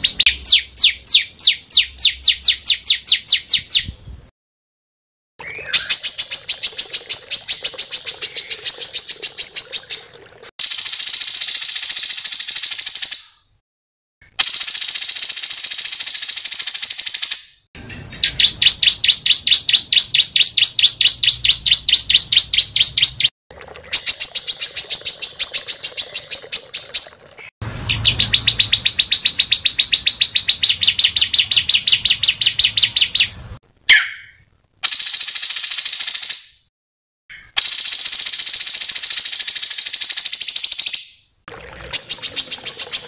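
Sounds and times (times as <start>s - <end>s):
songbird singing rapid high notes: 0.0s - 3.9s, 5.4s - 13.5s, 18.0s - 23.3s, 24.0s - 36.4s, 41.9s - 43.0s.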